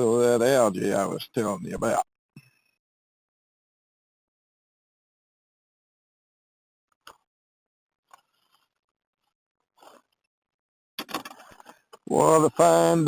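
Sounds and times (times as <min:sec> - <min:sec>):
soft clicks and scrapes: 0:08.0 - 0:10.3.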